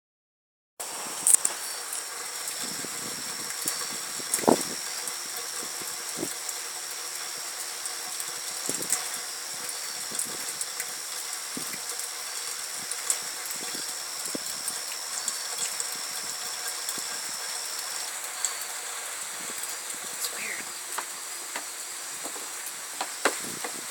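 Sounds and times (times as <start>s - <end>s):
rain hissing: 0.8s - 23.9s
drips and taps: 7.8s - 18.7s
thin high tone: 20.2s - 20.8s.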